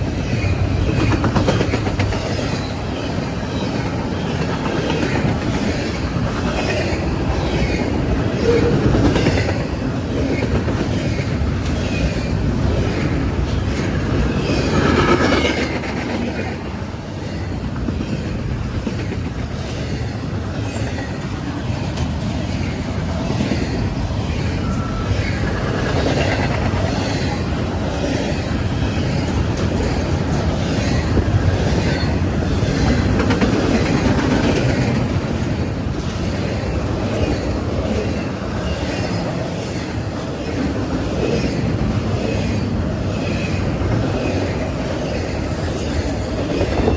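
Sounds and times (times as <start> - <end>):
train wheels clacking over rail joints: 0.0 - 16.7, 17.4 - 46.9
high-pitched wheel squeals: 24.4 - 25.5.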